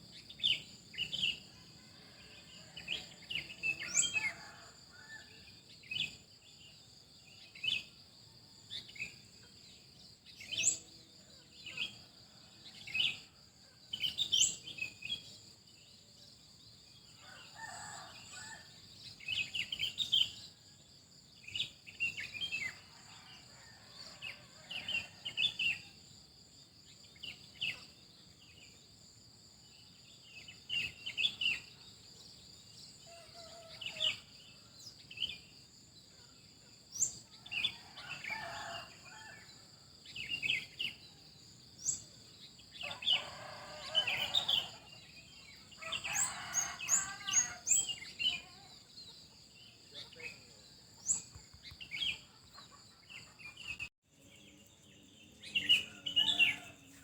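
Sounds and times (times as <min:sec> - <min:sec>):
small birds chirping: 0:45.4 - 0:56.7.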